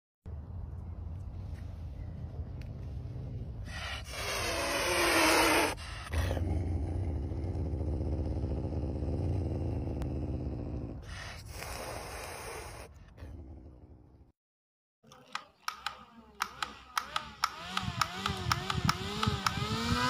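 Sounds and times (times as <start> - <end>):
steady low rumble: 0.3 - 4.1
small motor driving propeller whirring: 16.5 - 20.0.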